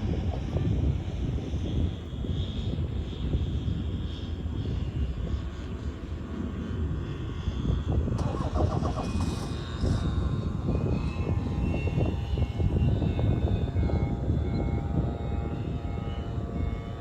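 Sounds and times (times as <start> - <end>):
wind noise on microphone: 0.0 - 17.0
model airplane motor whine: 7.2 - 17.0.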